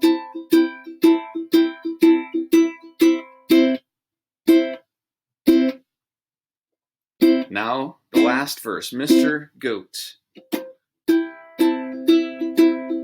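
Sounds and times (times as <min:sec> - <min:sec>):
ukulele strumming chords: 0:00.0 - 0:05.9, 0:07.2 - 0:13.0.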